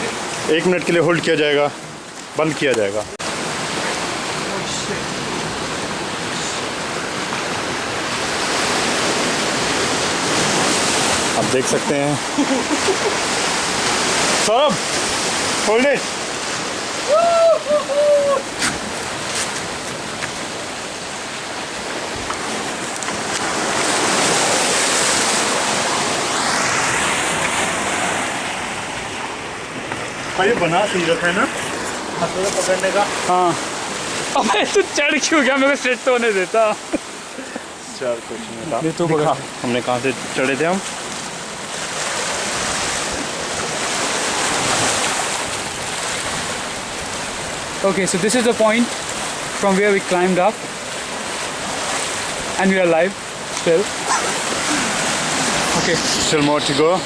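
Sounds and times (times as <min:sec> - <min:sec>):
ocean waves washing: 0:00.0 - 0:57.0
surf against rocky shore: 0:00.0 - 0:57.0.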